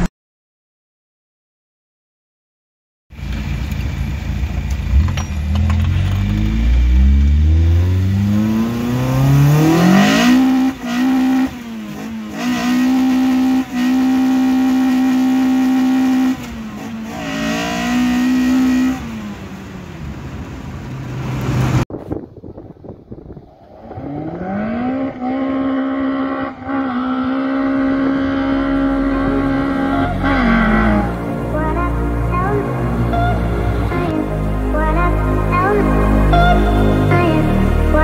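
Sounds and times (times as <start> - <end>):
car engine revving hard: 4.9 - 20.3, 23.7 - 31.4.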